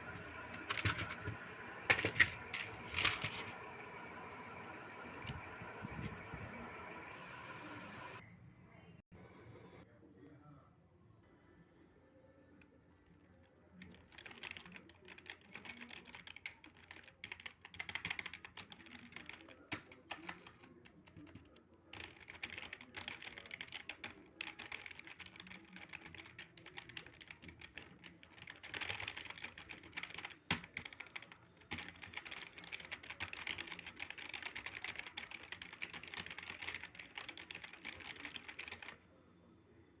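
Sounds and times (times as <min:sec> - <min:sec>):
membrane keyboard typing: 0:00.0 - 0:04.6, 0:13.8 - 0:39.0.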